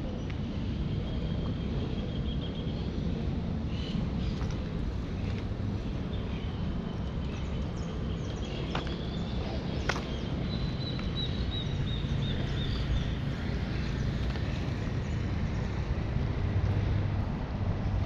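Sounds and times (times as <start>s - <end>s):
steady low rumble: 0.0s - 18.0s
birds chirping: 3.7s - 15.9s.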